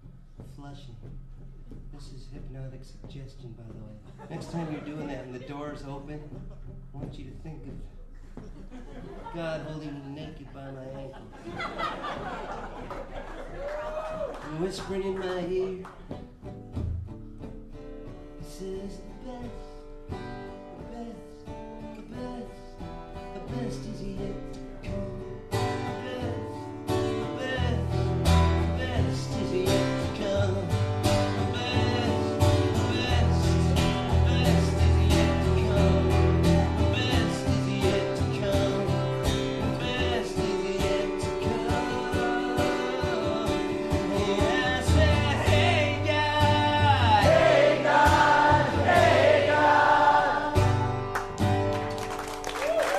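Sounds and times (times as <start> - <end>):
guitar: 0.0 - 52.9
gospel-like singing: 25.8 - 51.3.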